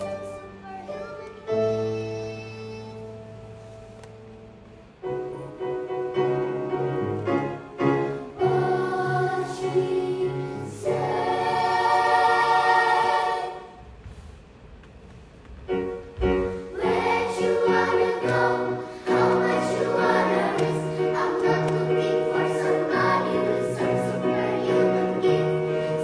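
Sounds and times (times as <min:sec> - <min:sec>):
choir singing in harmony: 0:07.8 - 0:13.9, 0:16.5 - 0:26.0.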